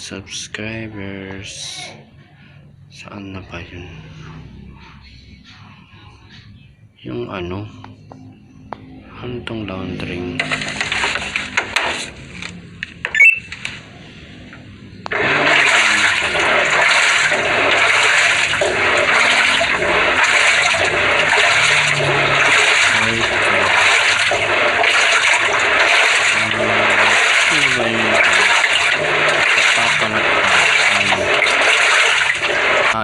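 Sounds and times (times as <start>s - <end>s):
churning water with swishes: 10.3s - 12.3s, 15.0s - 33.0s.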